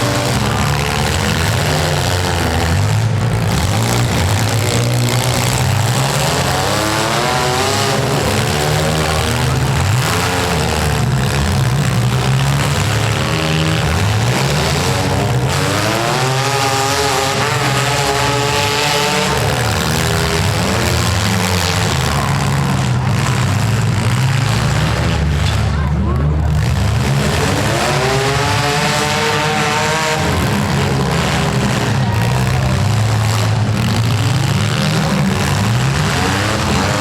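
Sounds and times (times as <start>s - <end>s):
car engines revving: 0.0s - 37.0s.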